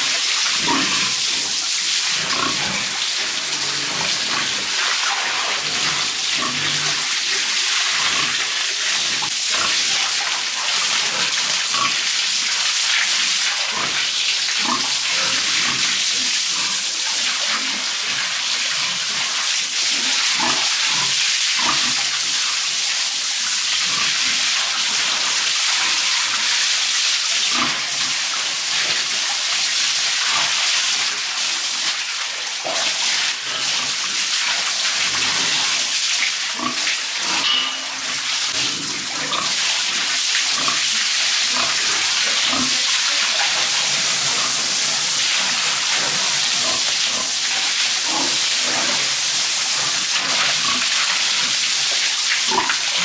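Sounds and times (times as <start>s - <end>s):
water spraying: 0.0s - 53.0s
pigs grunting: 0.5s - 4.8s, 5.6s - 7.2s, 36.5s - 51.6s.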